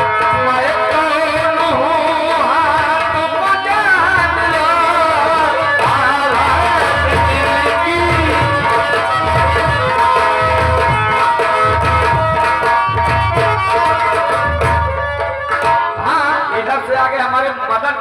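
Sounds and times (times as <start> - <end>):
hand drums beating rhythm: 4.2 - 16.1.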